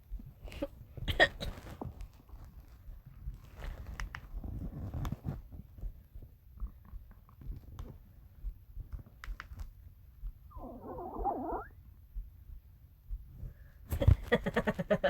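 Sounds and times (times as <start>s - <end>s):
stomach growling: 10.5s - 11.8s.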